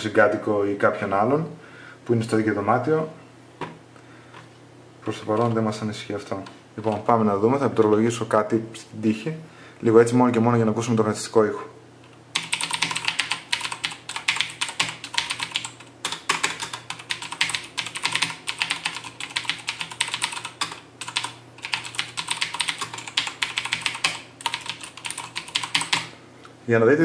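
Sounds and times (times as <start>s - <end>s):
mechanical keyboard typing: 12.4s - 26.1s.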